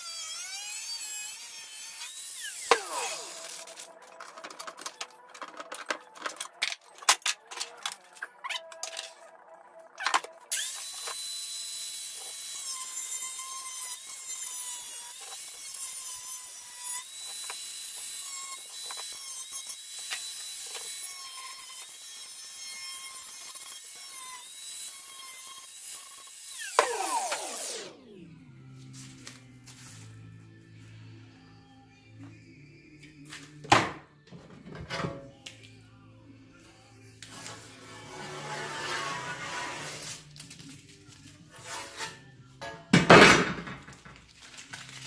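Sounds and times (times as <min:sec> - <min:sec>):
high-speed power tool whining: 0:25.0 - 0:28.1.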